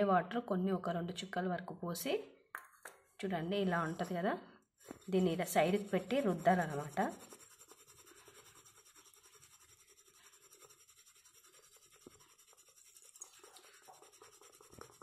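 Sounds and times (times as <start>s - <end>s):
almond scraping in clay pot: 3.6s - 4.2s, 4.8s - 15.0s.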